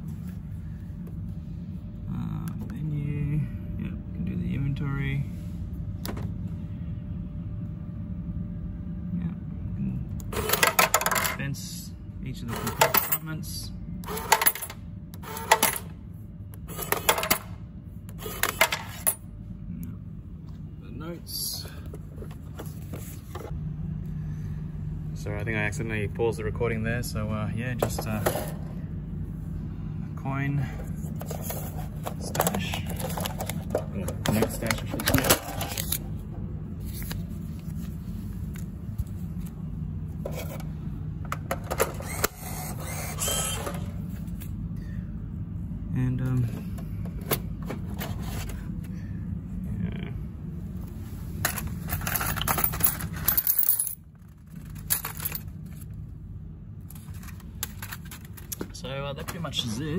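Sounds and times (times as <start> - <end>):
low steady hum: 0.0 - 59.9
coins clattering from vending machine: 10.3 - 11.4, 12.5 - 13.3, 14.1 - 15.9, 16.7 - 17.5, 18.3 - 19.2, 51.5 - 55.8
clicks and rattles of parts: 14.1 - 14.8, 31.2 - 36.0, 51.4 - 56.0, 56.9 - 59.4.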